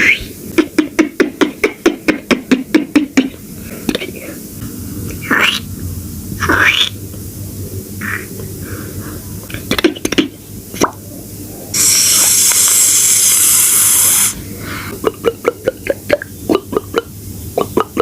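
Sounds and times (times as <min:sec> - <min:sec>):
beatbox short pops: 0:00.0 - 0:04.0, 0:09.6 - 0:11.0
beatbox mouth clicks: 0:00.0 - 0:04.1, 0:09.5 - 0:11.0
beatbox hiss: 0:00.0 - 0:18.0.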